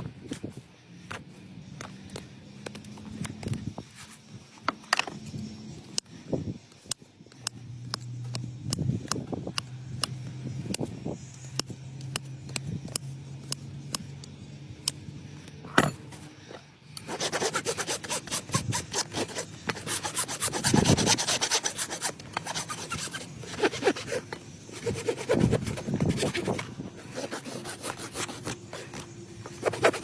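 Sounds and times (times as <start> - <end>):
rasp filing horse hoof: 17.0 - 30.0.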